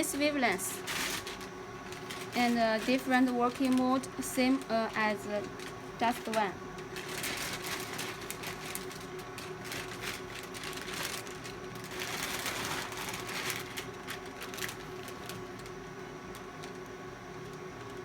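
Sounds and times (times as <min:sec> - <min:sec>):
machine cooling hum: 0:00.0 - 0:18.0.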